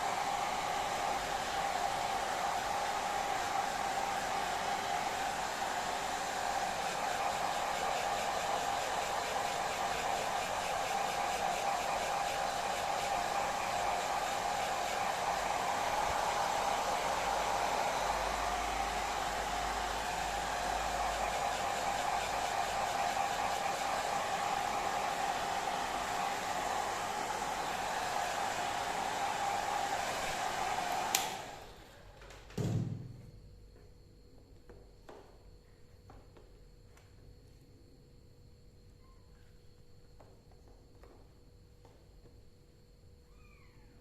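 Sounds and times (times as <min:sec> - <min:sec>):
hair dryer running: 0:00.0 - 0:32.0.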